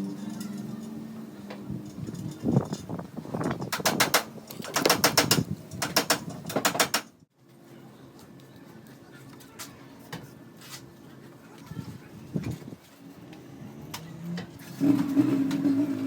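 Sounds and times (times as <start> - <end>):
hand tool rapid clicking: 3.7 - 7.1.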